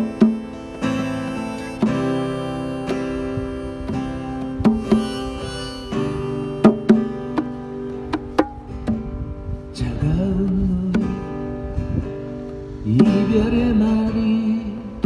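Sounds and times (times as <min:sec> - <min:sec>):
acoustic guitar chords: 0:00.0 - 0:15.0
sharp percussive hits: 0:08.1 - 0:08.7.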